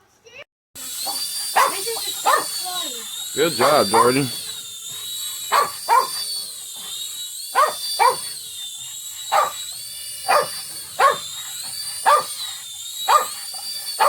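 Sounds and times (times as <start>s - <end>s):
toy helicopter motors whining: 0.8s - 14.0s
dog barking: 1.5s - 2.6s, 3.6s - 4.4s, 5.5s - 6.2s, 7.5s - 8.3s, 9.3s - 9.6s, 10.3s - 11.2s, 12.0s - 12.4s, 13.1s - 13.4s.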